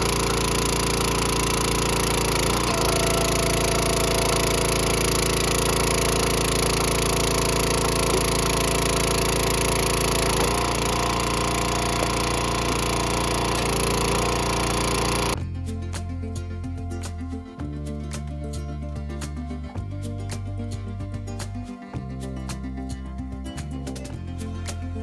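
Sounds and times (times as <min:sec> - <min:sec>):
small gas engine running: 0:00.0 - 0:15.5
music: 0:00.0 - 0:25.0.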